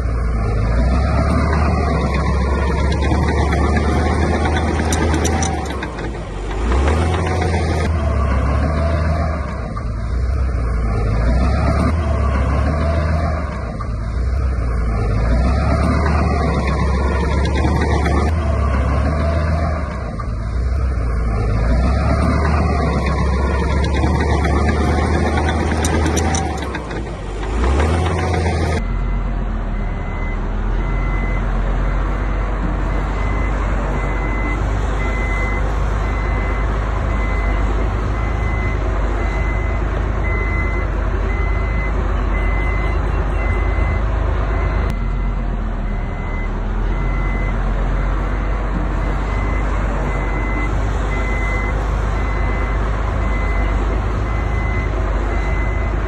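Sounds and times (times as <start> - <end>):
diesel engine rumbling: 0.0 - 56.0
reversing alarm beeping: 21.9 - 48.6, 49.2 - 56.0.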